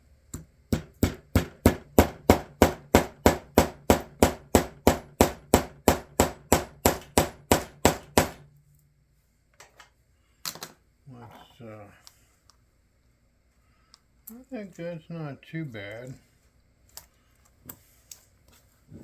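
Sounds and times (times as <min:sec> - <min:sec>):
small hammer tapping metal: 0:00.3 - 0:08.4.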